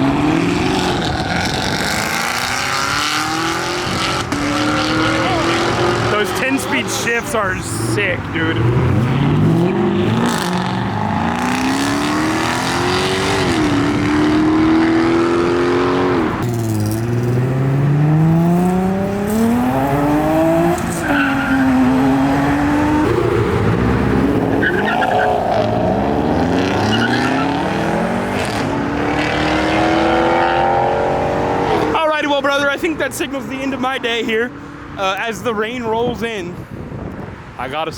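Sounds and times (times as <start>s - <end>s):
car engines accelerating: 0.0s - 35.8s.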